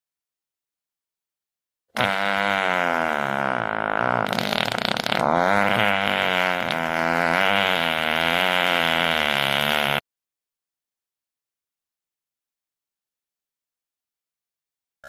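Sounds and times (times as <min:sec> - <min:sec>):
fart sound effect: 0:02.0 - 0:10.0.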